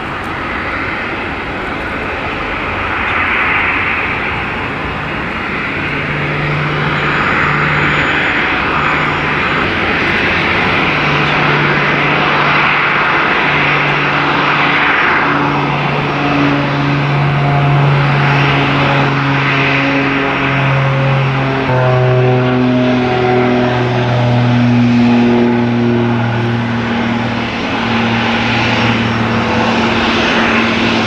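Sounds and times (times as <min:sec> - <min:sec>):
jet engines rushing: 0:00.0 - 0:31.0
low hum: 0:00.0 - 0:31.0.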